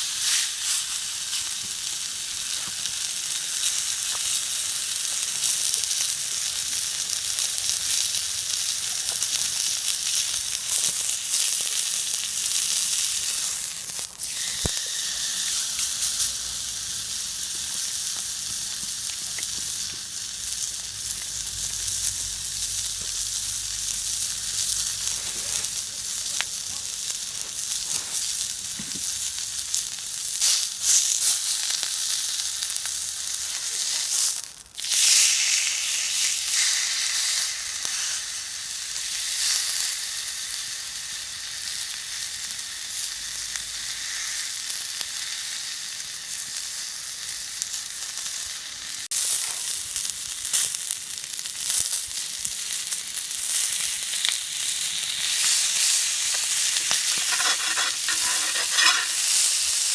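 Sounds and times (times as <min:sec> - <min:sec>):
food sizzling on griddle: 0:00.0 - 0:59.9.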